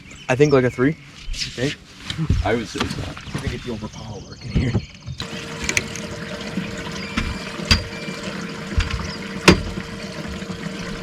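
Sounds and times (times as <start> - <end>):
pump humming: 5.2 - 11.0
water pouring: 5.2 - 11.0.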